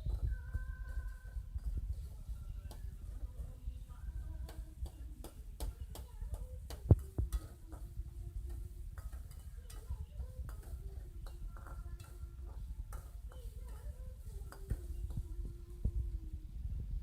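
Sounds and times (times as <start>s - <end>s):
kitchen utensils clicking and tapping: 0.0s - 15.8s.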